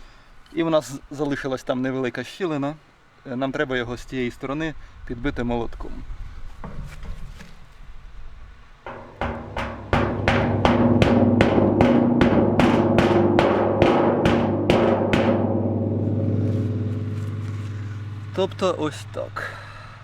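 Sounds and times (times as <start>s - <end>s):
hammer striking metal barrel: 8.9s - 20.0s.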